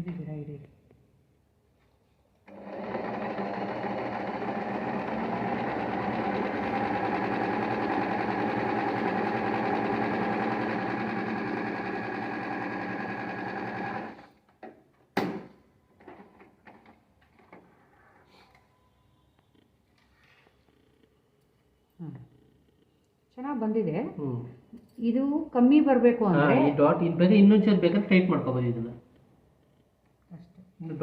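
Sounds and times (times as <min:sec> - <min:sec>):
sewing machine stitching: 0:02.5 - 0:14.3.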